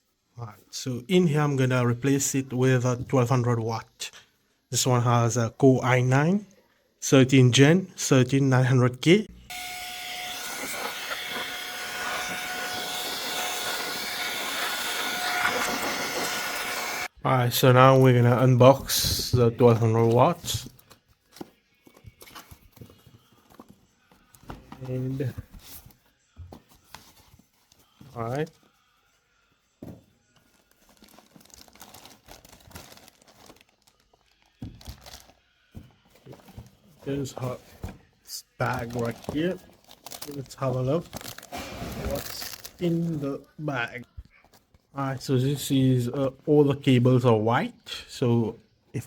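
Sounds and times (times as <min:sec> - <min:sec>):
air duster blowing: 0:09.6 - 0:17.1, 0:41.5 - 0:42.4
plastic packaging crinkling: 0:30.5 - 0:35.4, 0:38.6 - 0:43.5.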